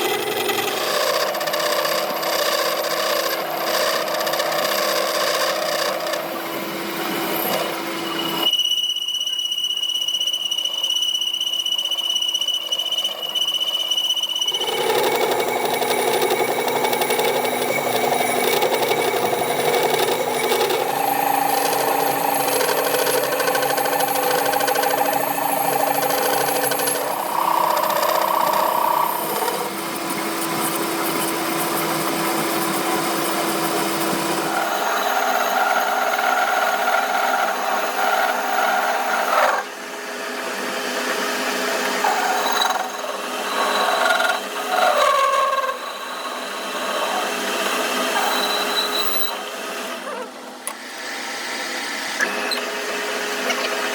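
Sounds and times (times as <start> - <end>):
workshop machine tools running: 14.2 - 53.9.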